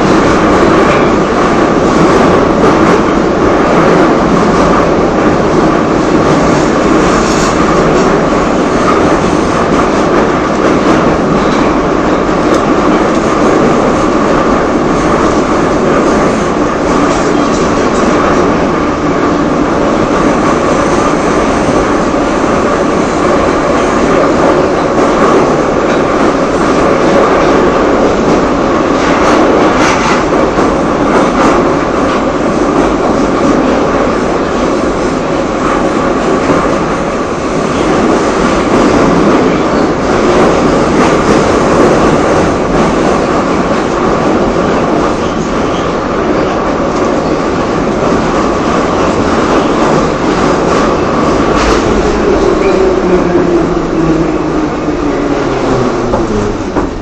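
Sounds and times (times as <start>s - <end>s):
electric fan droning: 48.8s - 57.0s.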